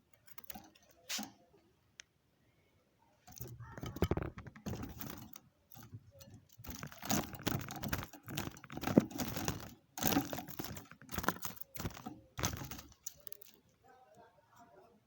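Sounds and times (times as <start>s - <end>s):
rustling and crinkling: 3.2s - 14.9s.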